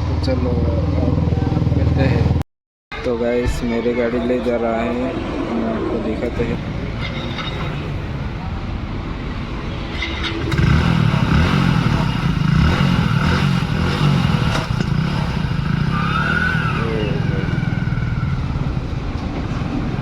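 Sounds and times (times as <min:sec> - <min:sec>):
motorcycle engine chugging: 0:00.0 - 0:02.4, 0:09.9 - 0:20.0.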